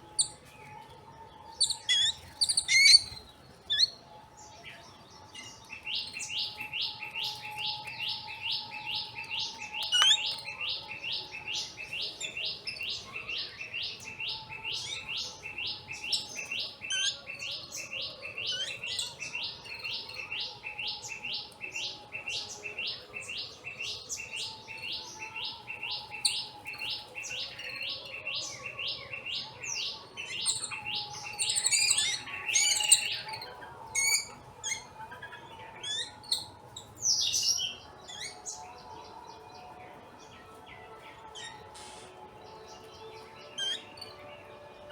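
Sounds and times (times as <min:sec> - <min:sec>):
bird sharp chirps: 0:01.6 - 0:04.0.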